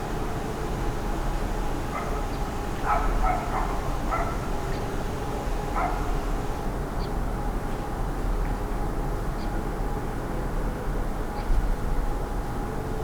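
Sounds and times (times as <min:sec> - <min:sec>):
dog barking: 0:01.9 - 0:04.5, 0:05.8 - 0:06.2.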